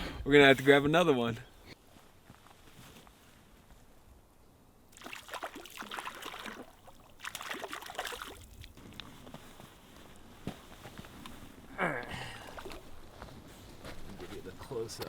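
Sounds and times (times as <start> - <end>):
lake water splashing: 4.9 - 9.3.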